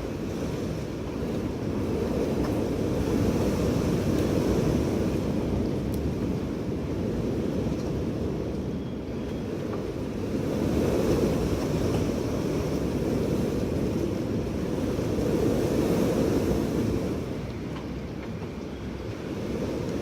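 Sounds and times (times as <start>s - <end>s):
strong wind gusts: 0.0s - 20.0s.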